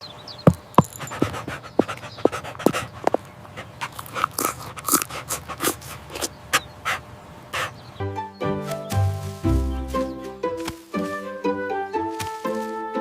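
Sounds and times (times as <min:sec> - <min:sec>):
dog panting: 0:00.5 - 0:07.8
dog sniffing or yipping: 0:00.8 - 0:07.8.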